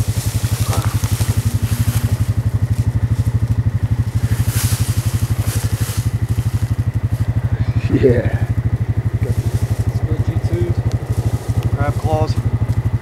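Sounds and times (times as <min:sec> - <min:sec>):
motorbike engine running: 0:00.0 - 0:13.0.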